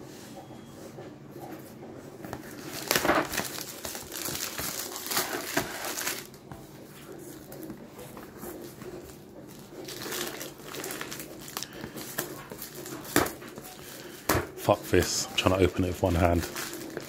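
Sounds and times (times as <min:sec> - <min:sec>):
packaging crinkling and rustling: 0:02.3 - 0:06.5, 0:08.4 - 0:17.0.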